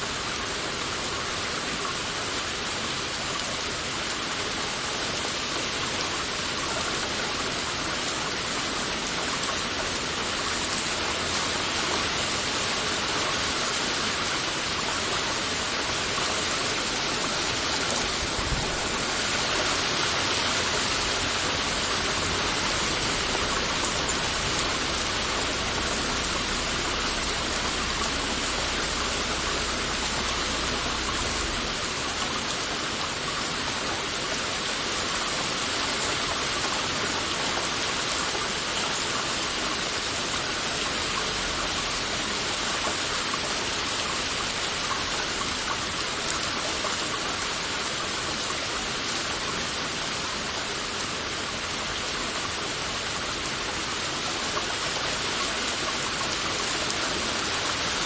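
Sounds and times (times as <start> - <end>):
heavy rain falling: 0.0 - 58.0
faint low rumble: 22.7 - 32.4.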